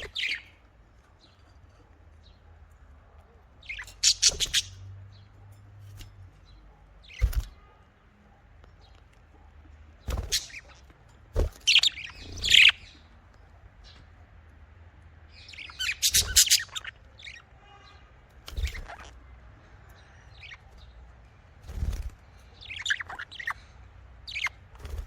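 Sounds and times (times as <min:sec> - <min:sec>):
budgerigars chirping: 0:00.0 - 0:00.6, 0:03.6 - 0:04.8, 0:11.6 - 0:13.0, 0:15.4 - 0:17.5, 0:18.5 - 0:19.2, 0:19.9 - 0:21.0, 0:21.8 - 0:25.0.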